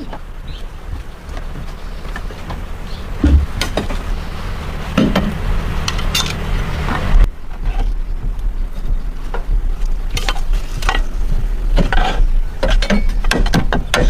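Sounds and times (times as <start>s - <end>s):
steady low rumble: 0.0s - 14.0s
metallic clinks and knocks: 5.0s - 6.5s.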